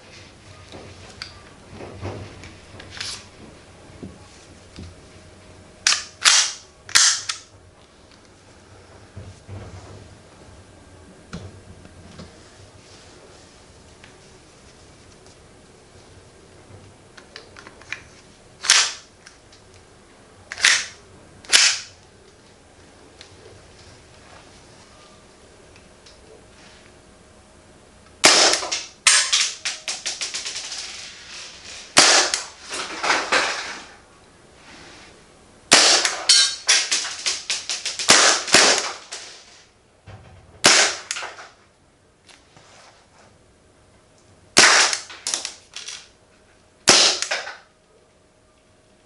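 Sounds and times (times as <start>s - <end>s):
airsoft pistol shots: 28.2s - 30.1s, 32.0s - 32.5s, 35.7s - 37.2s, 37.8s - 39.2s, 40.6s - 41.4s, 44.6s - 45.4s, 46.8s - 47.6s.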